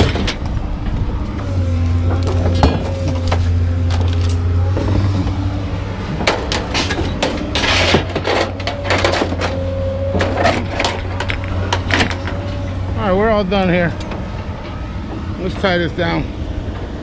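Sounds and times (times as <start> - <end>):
scrap knocking and clattering: 6.2 - 9.6.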